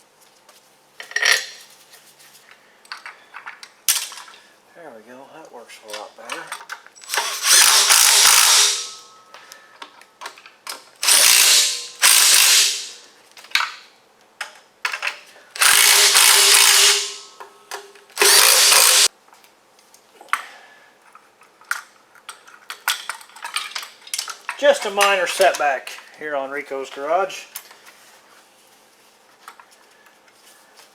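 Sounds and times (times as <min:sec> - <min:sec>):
powered ratchet wrench spinning: 0:07.0 - 0:09.0, 0:11.0 - 0:13.0, 0:15.6 - 0:17.3, 0:18.2 - 0:19.1.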